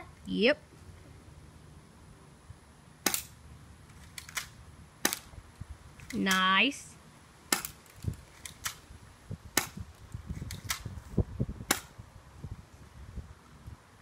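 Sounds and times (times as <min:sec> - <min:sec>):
airsoft pistol shots: 0:03.0 - 0:03.3, 0:11.7 - 0:11.9.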